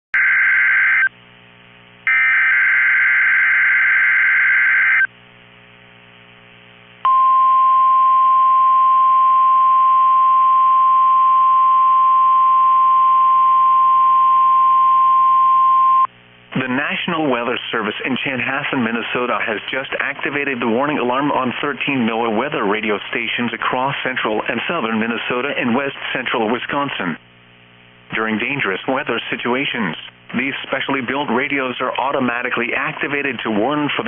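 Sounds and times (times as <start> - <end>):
steady warning alarm tone: 0.2 - 1.1, 2.1 - 5.1.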